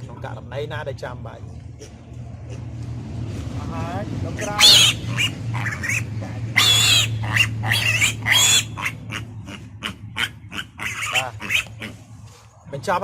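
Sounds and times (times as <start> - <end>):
steady low hum: 0.0 - 13.0
piglet squealing: 4.4 - 12.0.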